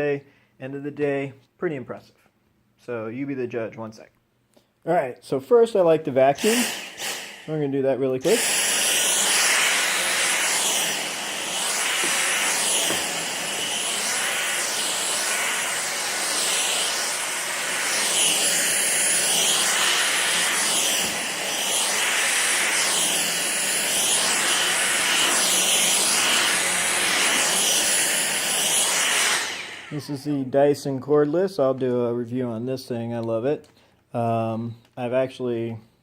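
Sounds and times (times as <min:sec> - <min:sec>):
vacuum cleaner whining on carpet: 0:06.4 - 0:07.5, 0:08.2 - 0:30.3.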